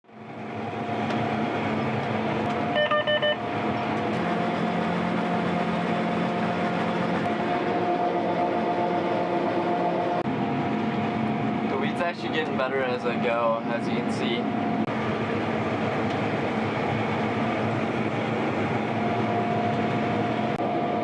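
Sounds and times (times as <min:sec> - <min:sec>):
combine harvester running: 0:00.1 - 0:21.0
electronic beeps: 0:02.7 - 0:03.4.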